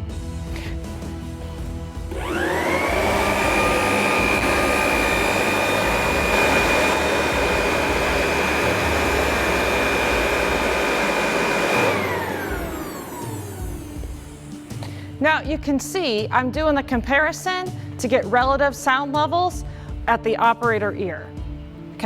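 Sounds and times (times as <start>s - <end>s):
leaf blower fan whine: 2.0s - 15.2s.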